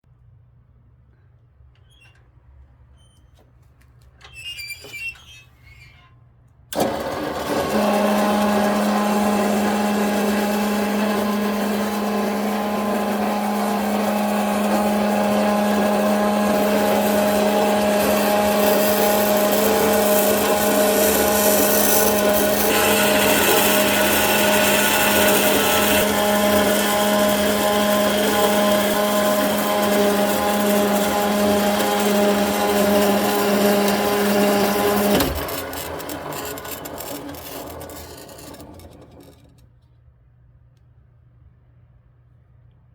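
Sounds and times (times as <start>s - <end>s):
band saw motor hum: 6.8s - 39.5s.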